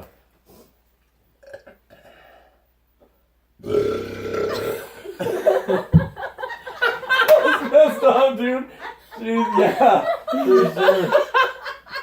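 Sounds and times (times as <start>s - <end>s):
loud drawn-out burp: 1.4s - 1.8s, 3.6s - 5.0s.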